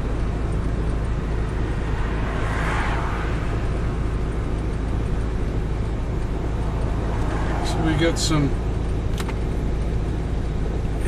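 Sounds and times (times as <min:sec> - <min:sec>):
car engine cruising: 0:00.0 - 0:11.0
rushing noise: 0:00.6 - 0:08.8.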